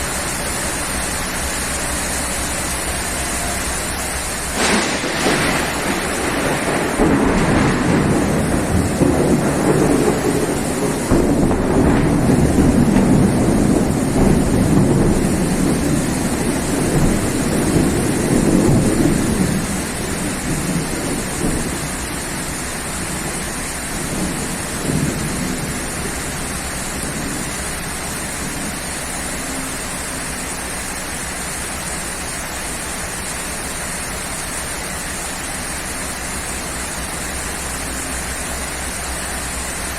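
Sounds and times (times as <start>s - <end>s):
steady rain falling: 0.0s - 39.9s
rolling thunder rumble: 0.4s - 31.2s.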